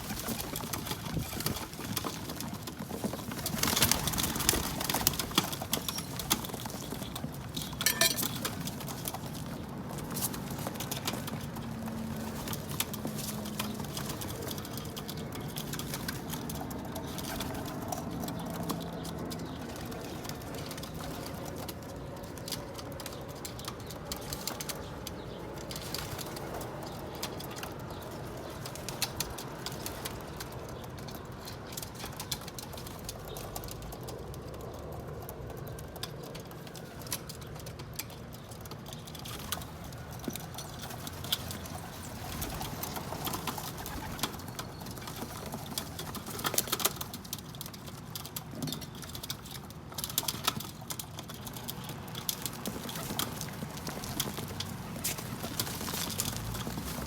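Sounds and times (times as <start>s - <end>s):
pigeons cooing: 39.4s - 47.0s.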